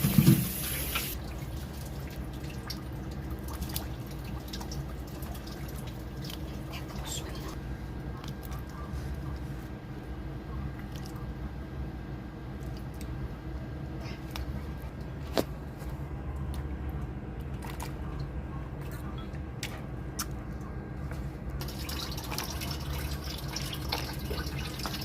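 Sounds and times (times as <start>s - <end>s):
water trickling in a sink: 0.0s - 7.2s, 21.6s - 25.0s.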